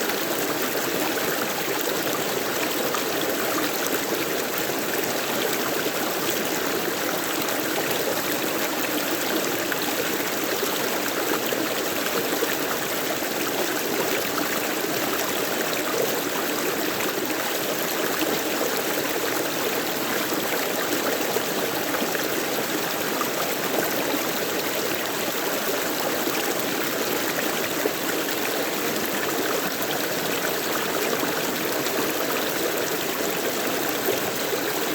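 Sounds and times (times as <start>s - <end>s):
stream water flowing: 0.0s - 34.9s.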